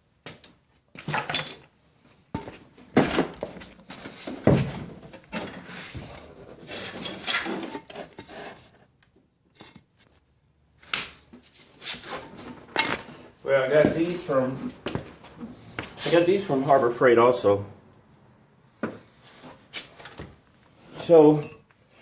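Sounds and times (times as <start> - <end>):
metal tools clinking and clattering: 1.1 - 1.7, 6.8 - 8.2
knocks and scrapes: 2.4 - 8.9, 11.3 - 16.3.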